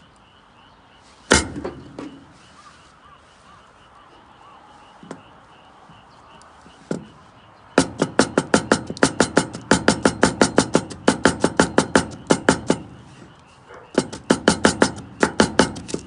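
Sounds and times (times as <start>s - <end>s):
faint outdoor background: 0.0s - 16.0s
knock: 6.9s - 7.2s, 7.8s - 13.0s, 13.9s - 16.0s.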